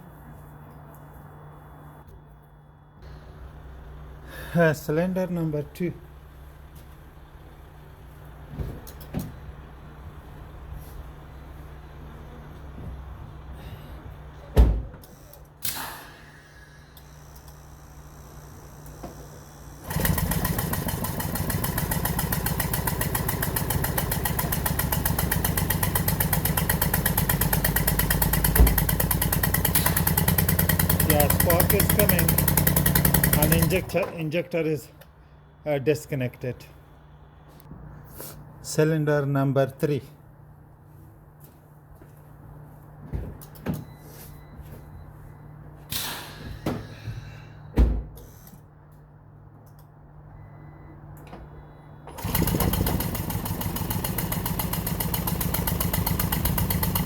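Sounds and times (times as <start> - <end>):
engine cranking without firing: 16.8 - 34.2, 52.1 - 57.0
heavy thump: 46.4 - 48.2
brief thump: 47.8 - 48.2.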